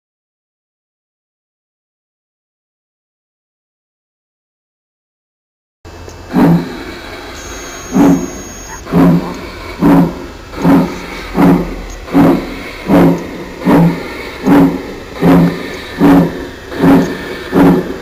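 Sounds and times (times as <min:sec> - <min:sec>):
steady steam hiss: 0:05.9 - 0:18.0
steam locomotive chuffs: 0:05.9 - 0:18.0.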